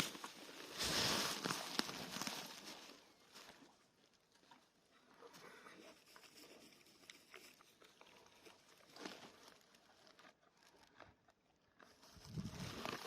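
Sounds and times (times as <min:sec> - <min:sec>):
horse chewing grass: 0:04.3 - 0:13.0.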